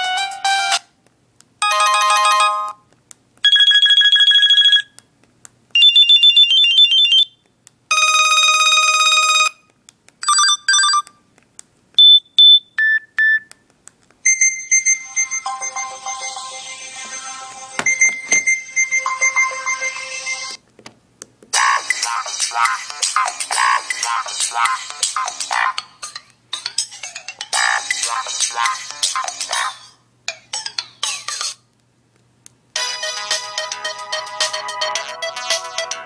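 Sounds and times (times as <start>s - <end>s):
electronic phone ringtones: 1.6s - 2.8s, 3.5s - 4.9s, 7.9s - 9.6s, 10.2s - 11.1s, 14.3s - 20.5s
melodic ringtone: 1.6s - 2.8s, 3.5s - 4.9s, 7.9s - 9.6s, 14.3s - 20.6s, 32.8s - 36.0s.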